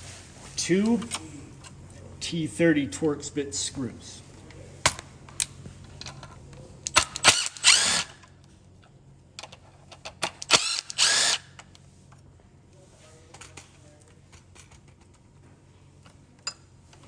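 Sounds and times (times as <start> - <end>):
power driver spinning screws: 6.9 - 8.2, 10.3 - 11.6.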